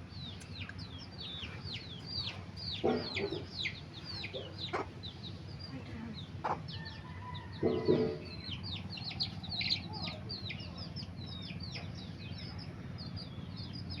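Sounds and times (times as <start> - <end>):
chicks peeping: 0.1 - 14.0
hen clucking: 0.4 - 10.9.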